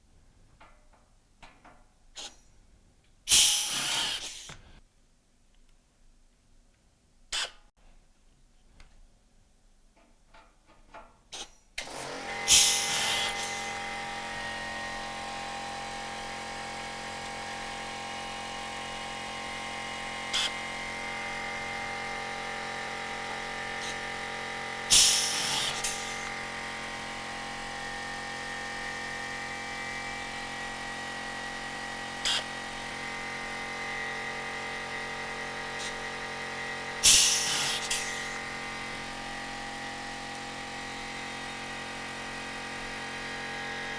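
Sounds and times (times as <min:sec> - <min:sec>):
pneumatic tool air hiss: 0:02.2 - 0:02.4, 0:03.3 - 0:04.7, 0:12.4 - 0:13.8, 0:20.3 - 0:20.6, 0:23.8 - 0:26.3, 0:32.1 - 0:32.8, 0:35.7 - 0:36.3, 0:37.0 - 0:38.4
pneumatic tool click: 0:02.2 - 0:02.4, 0:03.3 - 0:04.7, 0:11.3 - 0:13.8, 0:20.3 - 0:20.6, 0:24.9 - 0:26.3, 0:32.2 - 0:32.6, 0:37.0 - 0:38.4
air compressor motor humming: 0:11.8 - 0:43.9.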